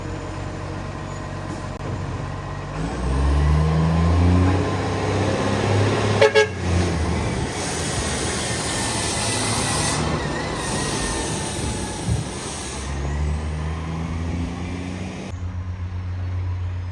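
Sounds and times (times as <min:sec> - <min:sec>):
diesel truck engine revving: 0:00.0 - 0:15.4
short horn toots: 0:06.2 - 0:06.7
air hissing: 0:07.3 - 0:13.6.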